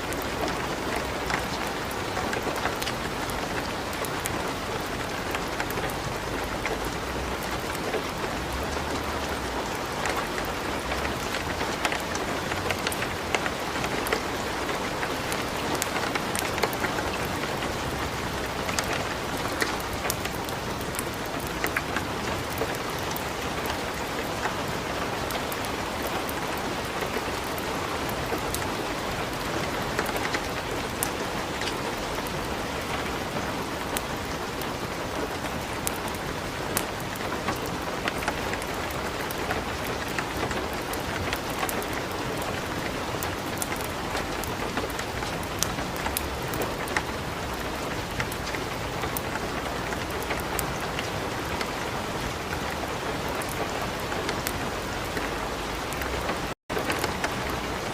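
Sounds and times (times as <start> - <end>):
wood fire crackling: 0.0 - 24.6, 36.8 - 51.7.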